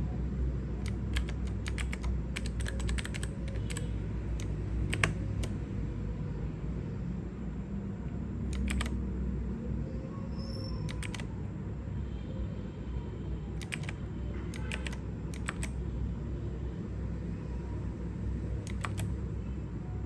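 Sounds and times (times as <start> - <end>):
mechanical keyboard clicks: 0.8 - 5.6, 8.5 - 9.0, 10.9 - 11.3, 13.6 - 15.8, 18.5 - 19.2.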